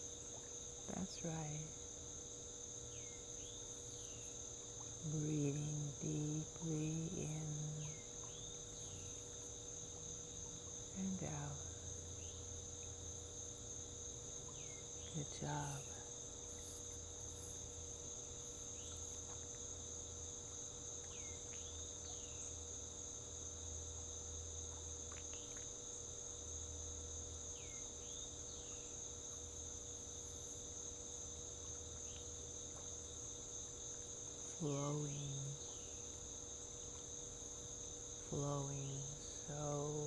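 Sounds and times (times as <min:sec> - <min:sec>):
crickets chirring: 0:00.0 - 0:40.0.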